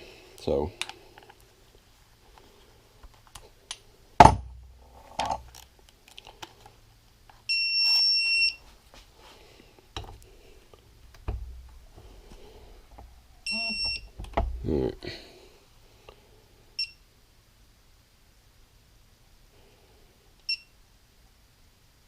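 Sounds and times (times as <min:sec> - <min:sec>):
electronic beep: 0:13.4 - 0:14.1.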